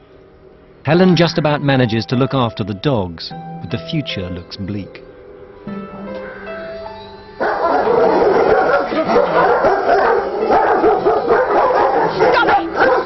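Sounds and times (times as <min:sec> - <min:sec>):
many dogs barking and whining: 0:07.3 - 0:13.0.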